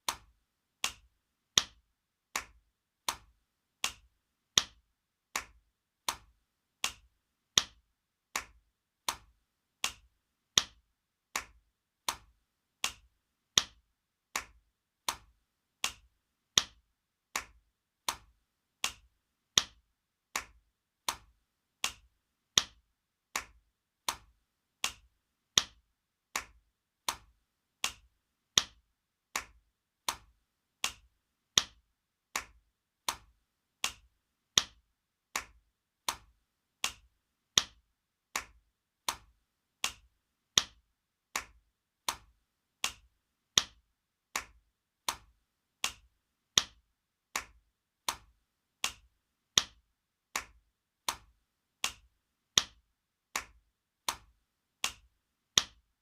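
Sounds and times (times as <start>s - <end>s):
sharp slaps: 0.1s - 1.8s, 2.4s - 4.8s, 5.4s - 7.8s, 29.4s - 31.0s, 32.4s - 34.0s.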